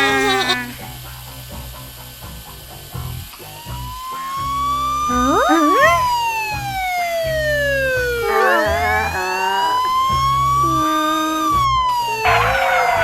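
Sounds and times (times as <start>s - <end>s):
background music with bass line: 0.0s - 13.0s
cartoon siren-like wailing tone: 3.5s - 13.0s
short warbling chirps: 3.6s - 12.2s.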